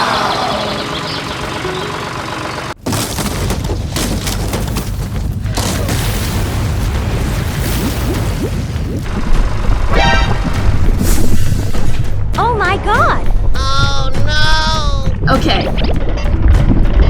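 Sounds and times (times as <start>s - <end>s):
heavy rumbling with cracks: 2.8s - 12.4s, 14.9s - 17.0s.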